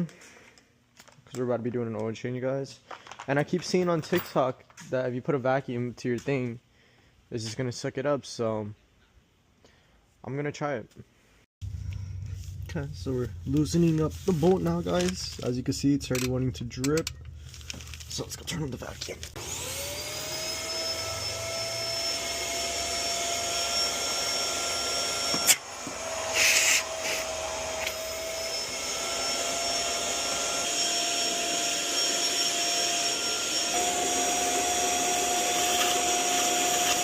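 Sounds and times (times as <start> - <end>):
vacuum cleaner motor whine: 19.4 - 37.0.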